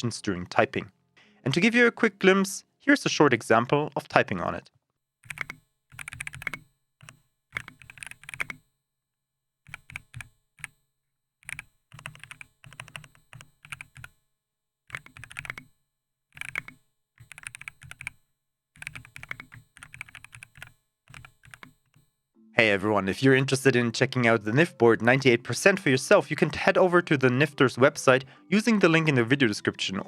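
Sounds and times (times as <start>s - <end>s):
mechanical keyboard typing: 5.2s - 8.6s, 9.7s - 10.8s, 11.4s - 14.2s, 14.9s - 15.7s, 16.4s - 18.2s, 18.8s - 22.0s.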